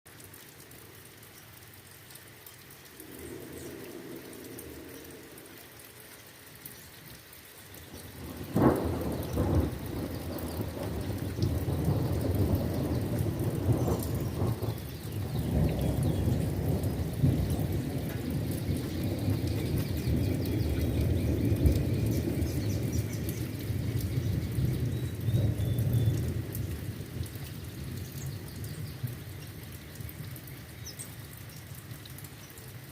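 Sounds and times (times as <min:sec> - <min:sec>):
rain falling: 0:00.1 - 0:32.9
rolling thunder: 0:02.9 - 0:06.0, 0:07.9 - 0:30.3
sharp thunderclap: 0:08.2 - 0:26.8.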